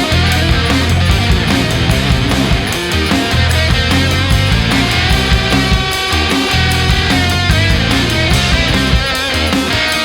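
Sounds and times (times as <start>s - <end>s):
heavy rock music: 0.0s - 10.0s.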